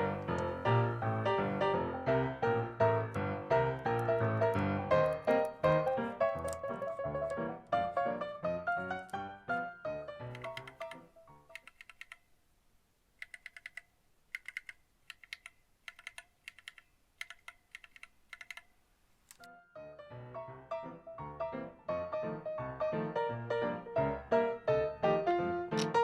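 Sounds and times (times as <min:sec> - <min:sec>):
keyboard keys clicking: 0:00.0 - 0:12.3, 0:13.2 - 0:19.6, 0:25.7 - 0:26.0.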